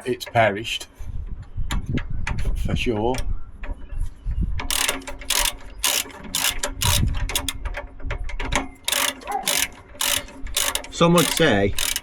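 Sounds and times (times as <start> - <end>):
ratchet spanner clicking: 4.7 - 7.6, 8.8 - 12.0.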